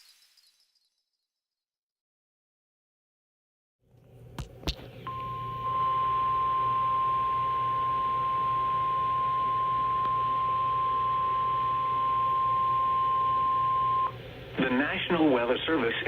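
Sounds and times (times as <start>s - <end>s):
faint hum: 3.9s - 16.0s
long steady alarm beep: 5.1s - 14.2s.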